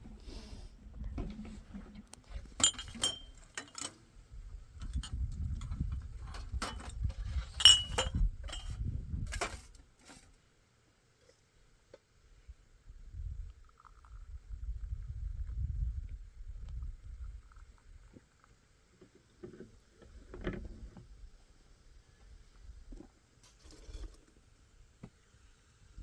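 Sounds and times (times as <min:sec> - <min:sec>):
ringing metallic clinks: 0:02.6 - 0:03.9.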